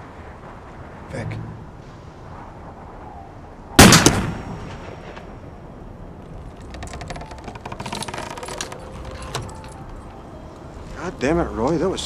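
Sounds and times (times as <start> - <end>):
loud gunshot: 3.8 - 5.1
faint rattling clicks: 6.2 - 10.1.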